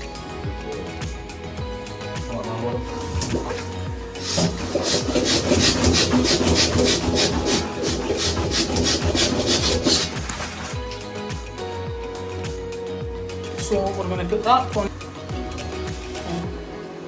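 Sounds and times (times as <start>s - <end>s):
fast rasping strokes: 2.9s - 10.9s.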